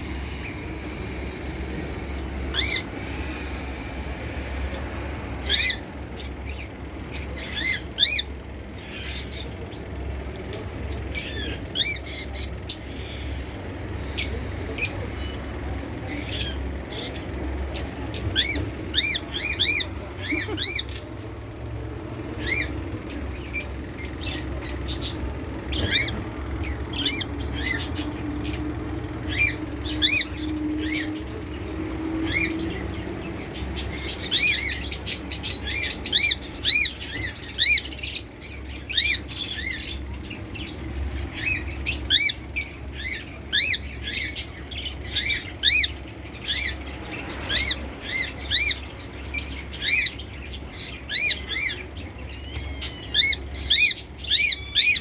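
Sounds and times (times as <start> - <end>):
cockatiel chirping: 0.0 - 9.5, 29.3 - 46.8, 47.5 - 55.0
steady low hum: 0.0 - 55.0.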